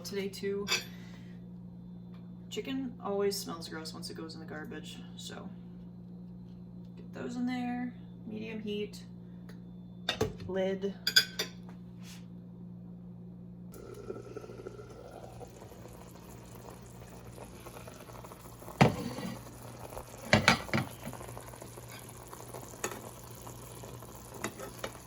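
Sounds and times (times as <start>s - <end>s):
low hum: 12.5s - 24.4s
bubbling sizzle in a covered pan: 13.8s - 25.0s.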